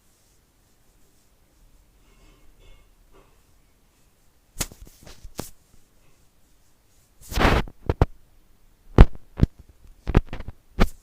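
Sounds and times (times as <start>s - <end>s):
rustling scrape: 0.0s - 8.1s.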